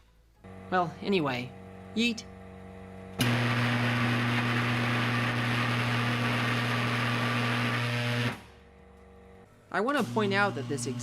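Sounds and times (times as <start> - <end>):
microwave oven electrical hum: 0.4 - 11.0.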